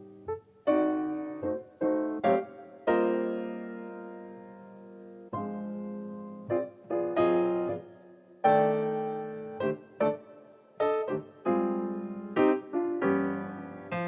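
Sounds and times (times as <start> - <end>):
piano chords ringing out: 0.0 - 14.0.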